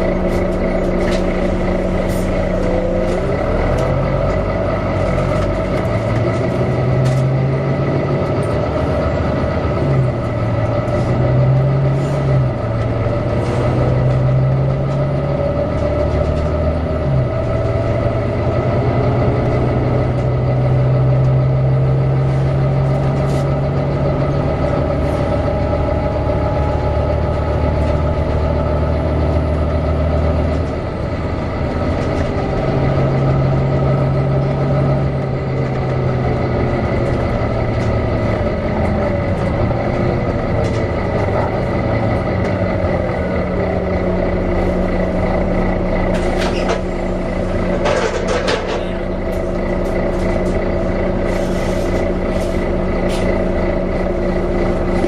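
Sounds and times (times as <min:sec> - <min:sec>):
bus engine running: 0:00.0 - 0:55.0.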